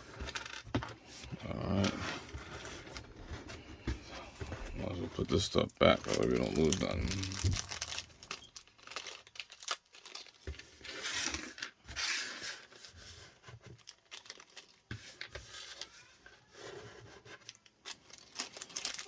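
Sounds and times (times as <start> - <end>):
packaging crinkling and rustling: 0.0 - 16.0, 17.2 - 19.0.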